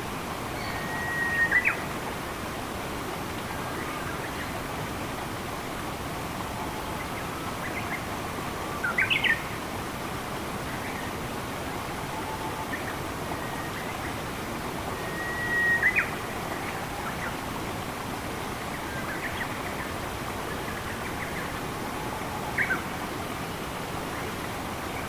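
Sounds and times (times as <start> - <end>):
flowing water rushing: 0.0 - 25.0
bird whistle calls: 15.0 - 16.1.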